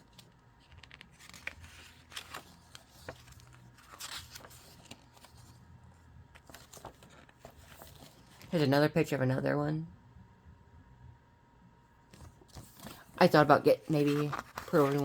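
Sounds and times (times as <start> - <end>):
paper pages rustling: 0.0 - 5.7, 6.3 - 8.7, 12.1 - 15.0.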